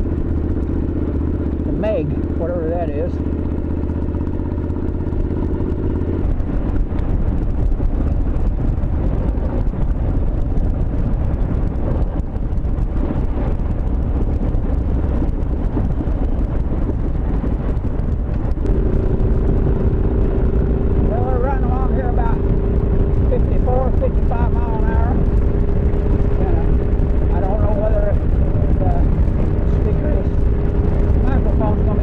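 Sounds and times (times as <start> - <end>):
motorcycle engine humming: 0.0 - 32.0
wind rushing over microphone: 0.0 - 32.0.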